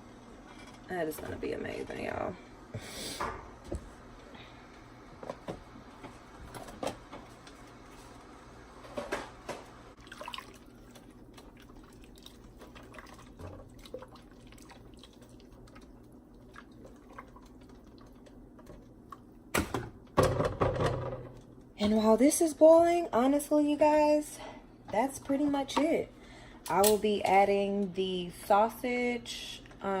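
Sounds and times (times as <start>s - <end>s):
low steady hum: 0.0s - 30.0s
liquid dripping and sloshing: 10.0s - 19.3s.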